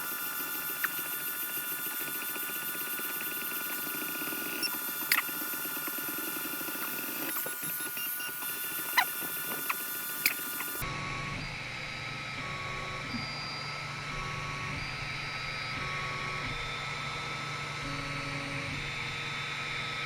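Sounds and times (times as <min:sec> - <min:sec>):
stepper motors whirring: 0:00.0 - 0:10.8.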